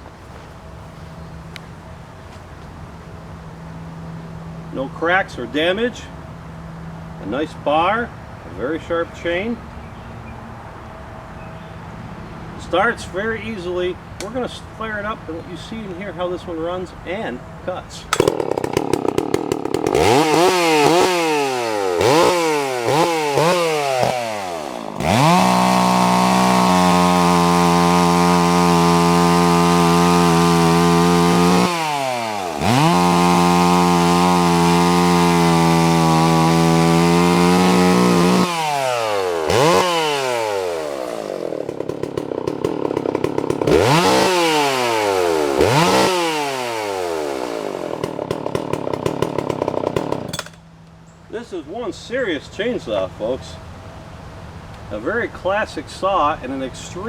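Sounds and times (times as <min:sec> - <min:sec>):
chainsaw revving: 0:17.9 - 0:50.7.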